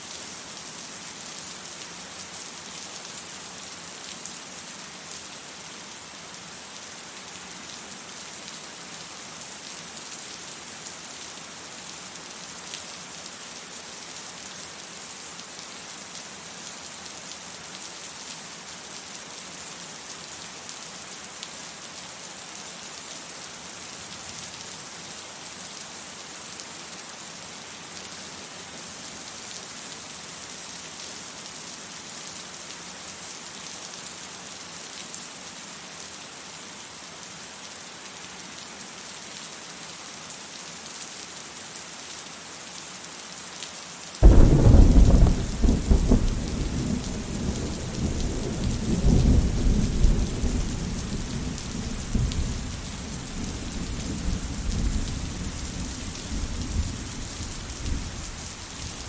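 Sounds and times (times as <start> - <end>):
steady rain: 0.0 - 59.0
thunder clap and rumble: 44.2 - 52.8.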